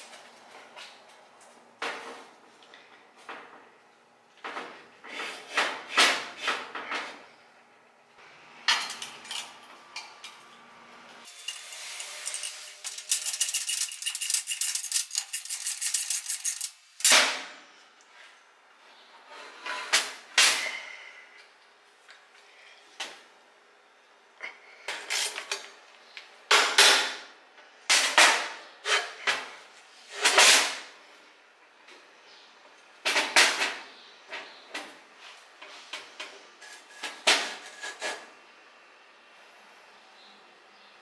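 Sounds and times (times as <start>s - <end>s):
metal parts and tools clanking: 11.3s - 17.2s.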